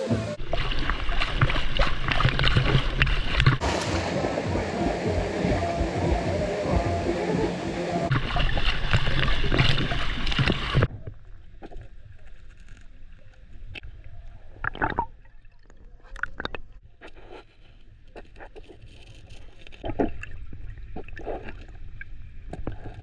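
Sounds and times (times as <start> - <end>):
loud rushing water: 0.0 - 10.9
water sloshing and splashing: 0.4 - 13.7, 18.5 - 23.0.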